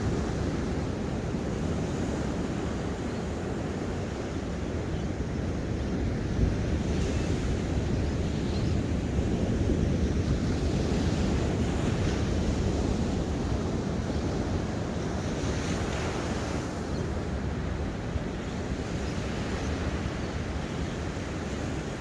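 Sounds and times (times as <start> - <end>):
wind rumble on microphone: 0.0 - 22.0.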